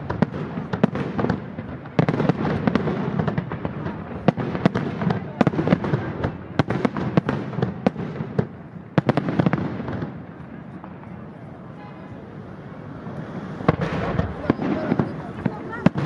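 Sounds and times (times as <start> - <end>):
continuous fireworks rumble: 0.0 - 16.0
fireworks cracks and bangs: 0.0 - 16.0.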